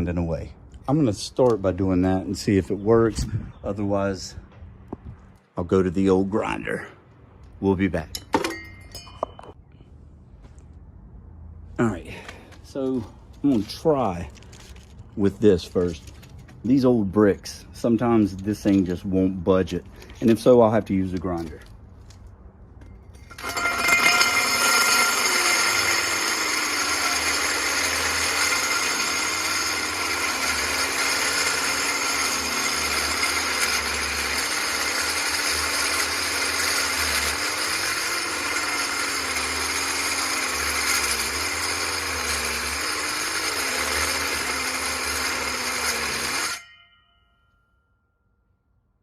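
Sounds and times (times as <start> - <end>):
masonry saw cutting brick: 23.1 - 46.8.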